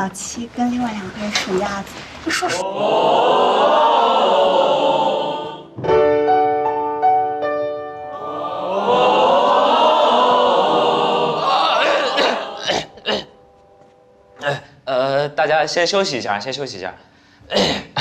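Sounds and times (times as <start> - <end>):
choir singing: 2.6 - 5.8, 8.1 - 13.0
piano accompaniment: 5.6 - 9.0.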